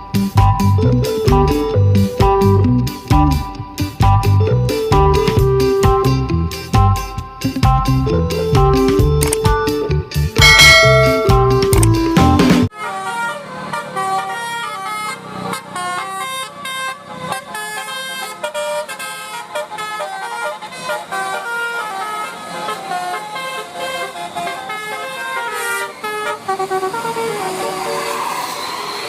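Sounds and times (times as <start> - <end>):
bus horn playing a fast tune: 12.7 - 28.3.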